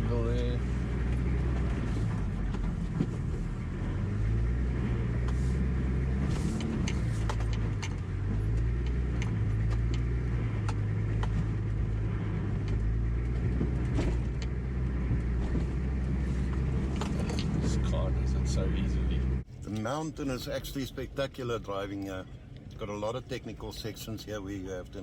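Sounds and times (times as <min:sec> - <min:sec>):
vehicle engine running at low revs: 0:00.0 - 0:19.6.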